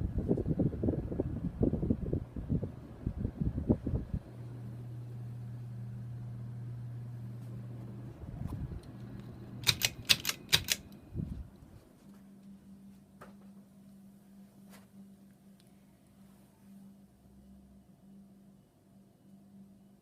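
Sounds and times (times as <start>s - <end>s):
ceiling fan motor hum: 0.0s - 20.0s
sharp clicks: 9.2s - 11.0s.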